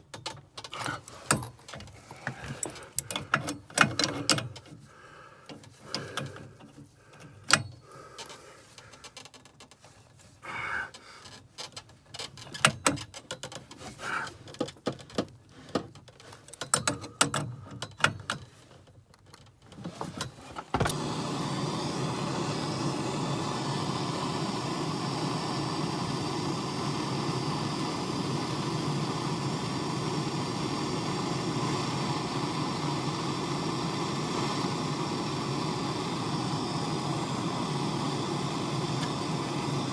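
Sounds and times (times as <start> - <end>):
steady hum with hiss: 19.8 - 39.9.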